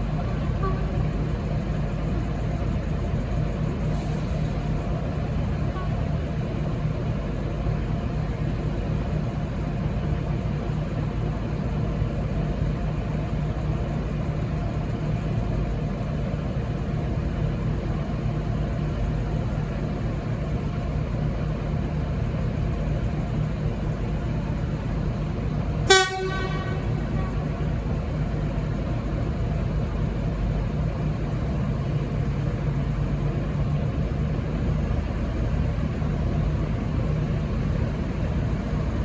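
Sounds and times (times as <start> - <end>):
train diesel engine rumble: 0.0 - 39.0
train horn toot: 0.3 - 1.5, 5.5 - 6.3, 25.8 - 28.2.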